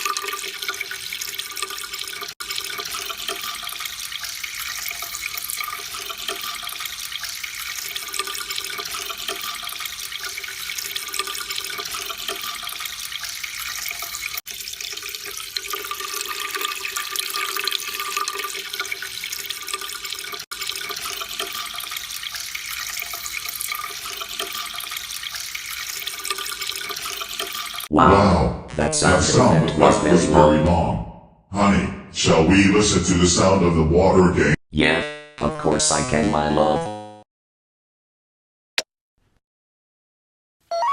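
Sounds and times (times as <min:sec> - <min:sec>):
running splashing water: 0:00.0 - 0:27.9.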